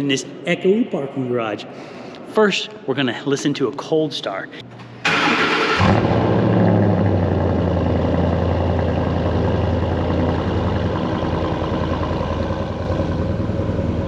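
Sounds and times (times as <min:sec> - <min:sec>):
truck engine idling loudly: 0:06.6 - 0:14.0.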